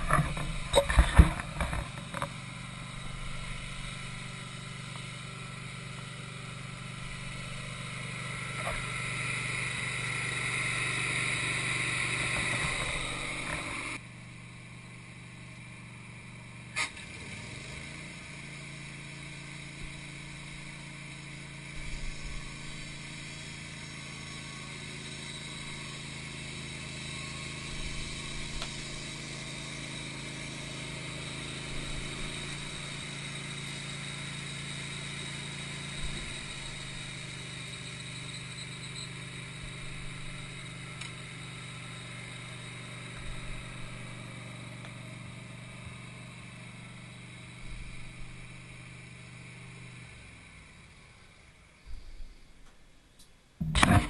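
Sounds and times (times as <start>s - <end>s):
sawmill motor hum: 0.0s - 52.7s, 53.6s - 54.0s
sharp click: 53.2s - 54.0s.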